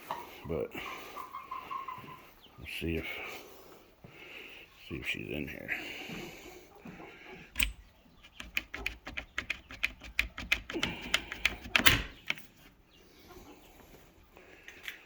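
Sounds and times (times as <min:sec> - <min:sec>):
sharp clicks and taps: 0:07.6 - 0:12.4.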